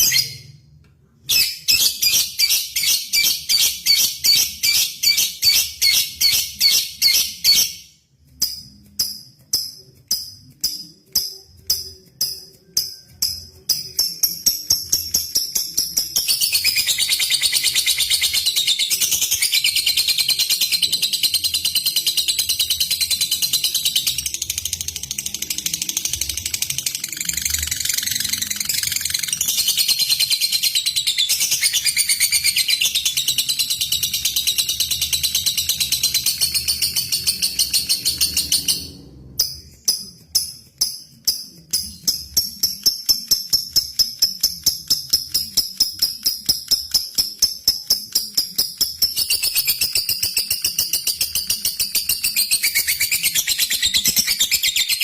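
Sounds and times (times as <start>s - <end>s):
sharp ticking chirps: 1.3s - 55.0s
lovebird high-pitched trill: 25.1s - 38.9s.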